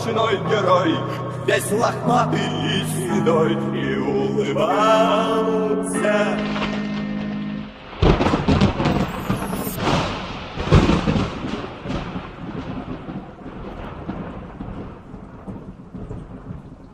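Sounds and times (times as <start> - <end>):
thunder rumbling: 6.4 - 16.9
rain hiss: 7.3 - 16.9.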